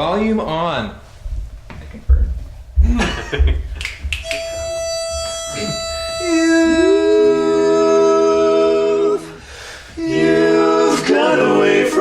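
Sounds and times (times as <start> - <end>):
a cappella group singing held notes: 6.2 - 12.0.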